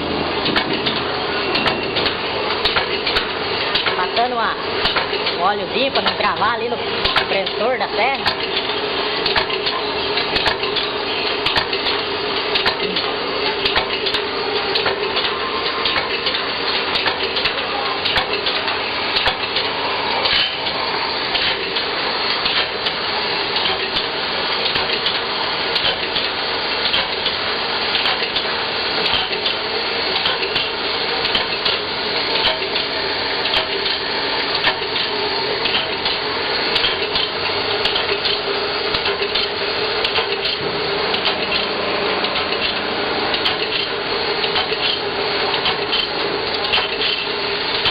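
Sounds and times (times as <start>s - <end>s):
short machine clicks: 23.6s - 31.8s, 32.4s - 47.9s.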